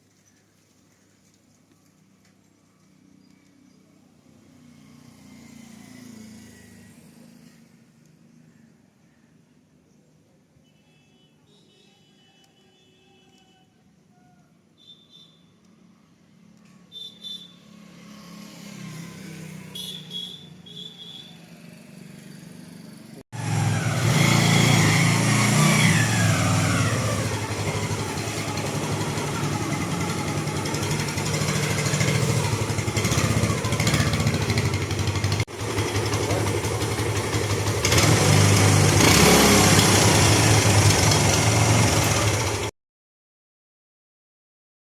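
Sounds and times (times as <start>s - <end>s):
motorcycle engine running: 21.7s - 42.7s.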